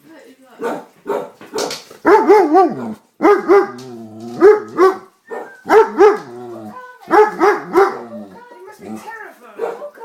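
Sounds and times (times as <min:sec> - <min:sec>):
dog barking: 0:00.6 - 0:03.8, 0:04.4 - 0:06.4, 0:07.1 - 0:08.3, 0:09.6 - 0:10.0
dog yowling: 0:02.1 - 0:08.5.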